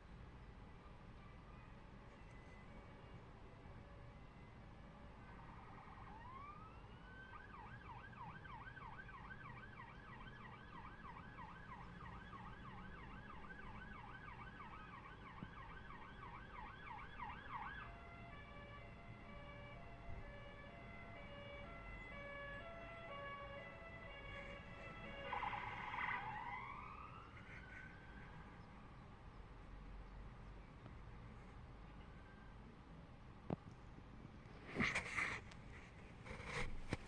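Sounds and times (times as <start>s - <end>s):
emergency vehicle siren: 1.4s - 28.9s.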